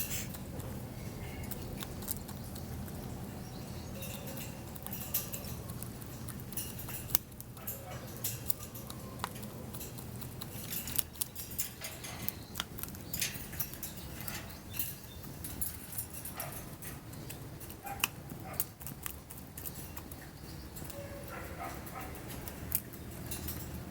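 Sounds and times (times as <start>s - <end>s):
low background hum: 0.0s - 23.9s.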